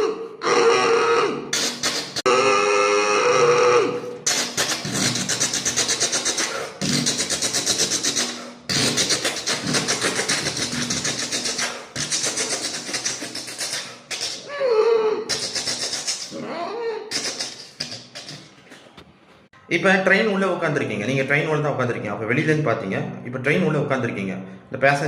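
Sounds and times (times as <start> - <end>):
vocal mimicry of train chugging: 0.0 - 18.7
vocal train hoot: 0.0 - 18.9.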